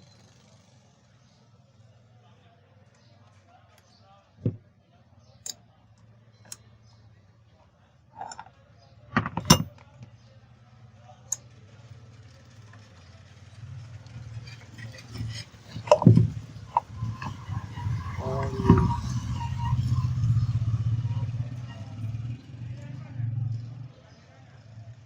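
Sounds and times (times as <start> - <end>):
metal clinks and knocks: 8.2 - 8.5, 9.2 - 9.9, 14.2 - 19.4.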